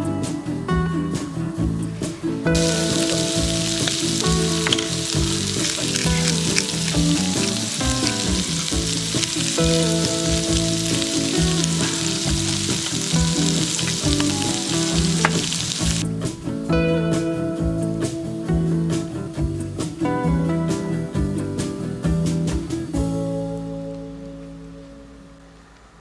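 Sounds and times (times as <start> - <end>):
acoustic guitar music: 0.0 - 25.5
food frying sizzle: 2.4 - 16.0.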